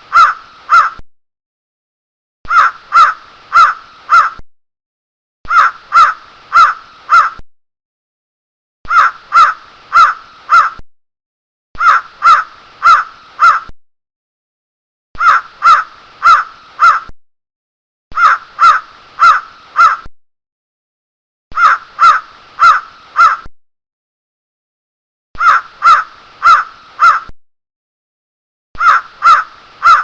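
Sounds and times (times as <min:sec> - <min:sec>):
crow cawing: 0:00.1 - 0:01.0, 0:02.5 - 0:04.4, 0:05.5 - 0:07.4, 0:08.9 - 0:10.8, 0:11.8 - 0:13.7, 0:15.2 - 0:17.1, 0:18.2 - 0:20.1, 0:21.6 - 0:23.5, 0:25.4 - 0:27.3, 0:28.8 - 0:30.0.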